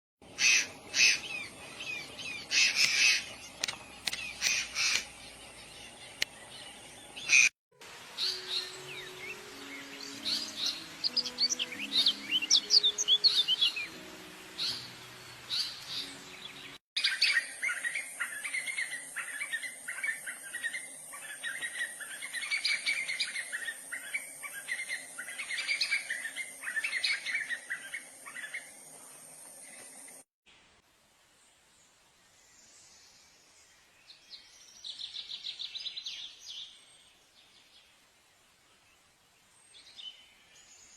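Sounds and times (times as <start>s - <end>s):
birds singing and calling: 0.2s - 7.5s, 8.2s - 30.2s.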